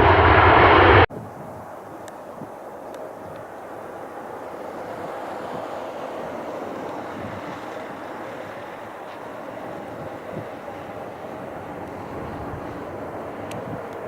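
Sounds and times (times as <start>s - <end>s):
jet airliner passing: 0.0s - 1.1s.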